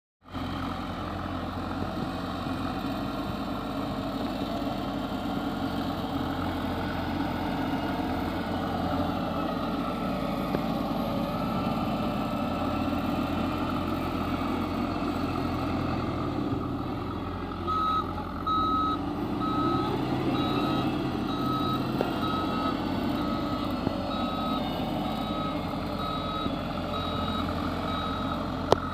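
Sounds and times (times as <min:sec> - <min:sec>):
heavy diesel machinery rumbling: 0:00.2 - 0:28.9
reversing alarm beeping: 0:17.7 - 0:28.9.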